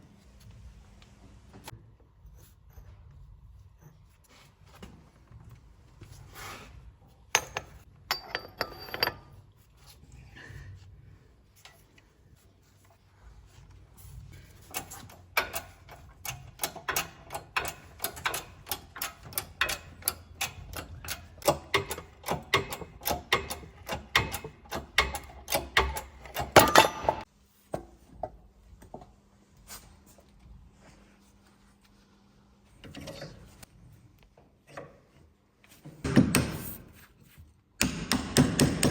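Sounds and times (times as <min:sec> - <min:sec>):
hand tools clicking and tapping: 0:14.7 - 0:27.3.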